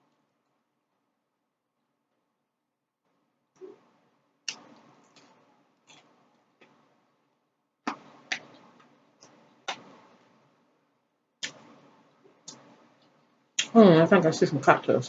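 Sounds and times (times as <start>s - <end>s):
person chewing crunchily: 4.4s - 6.7s.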